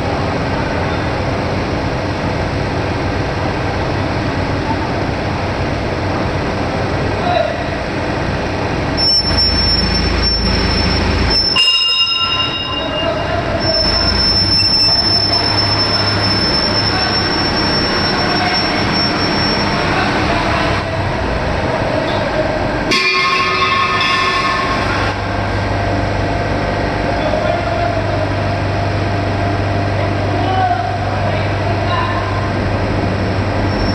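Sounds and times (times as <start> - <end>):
loud machinery noise: 0.0 - 33.9
low hum: 8.0 - 30.3
shrill whistle: 9.0 - 19.9
high-pitched metallic squealing: 9.0 - 20.9, 22.9 - 25.3, 33.6 - 33.9.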